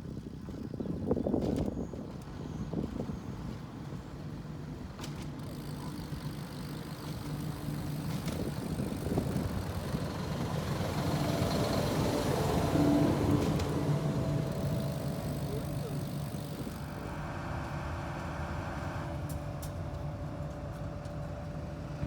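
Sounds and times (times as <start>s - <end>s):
vehicle engine running: 5.4s - 22.0s.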